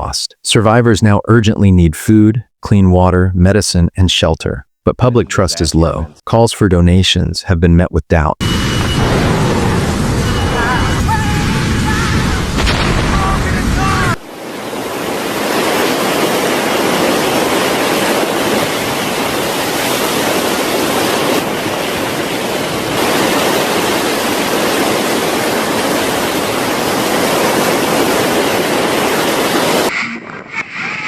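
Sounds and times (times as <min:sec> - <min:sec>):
floodwater rushing: 0:12.6 - 0:29.9.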